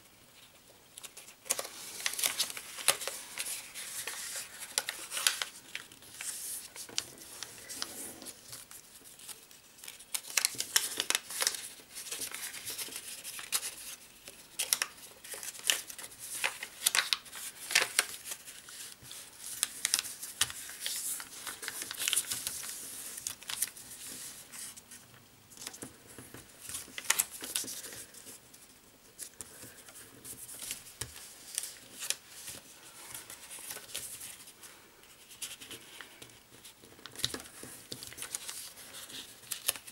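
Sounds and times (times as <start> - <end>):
paper being folded and creased: 0.5 - 24.9, 25.5 - 28.4, 29.2 - 39.9.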